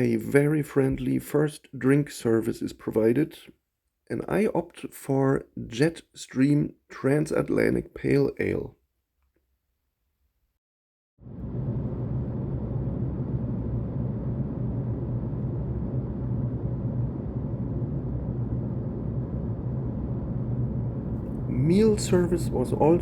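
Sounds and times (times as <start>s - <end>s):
airplane cabin rumble: 11.3s - 23.0s.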